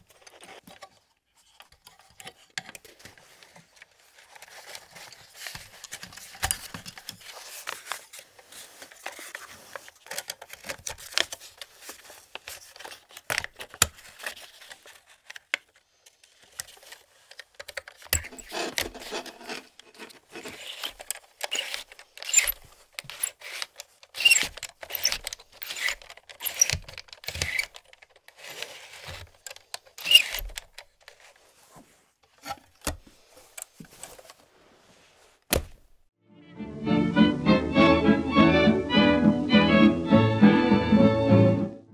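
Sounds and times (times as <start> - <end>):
camera metal parts clicking and rattling: 8.8 - 11.7, 16.4 - 31.1.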